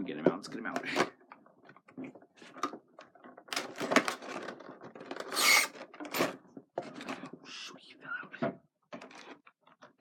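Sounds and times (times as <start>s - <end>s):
packaging crinkling and rustling: 2.0s - 6.4s.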